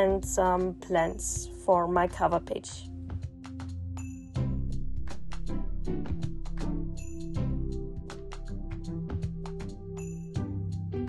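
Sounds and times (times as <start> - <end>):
sustained low notes: 4.4 - 10.0.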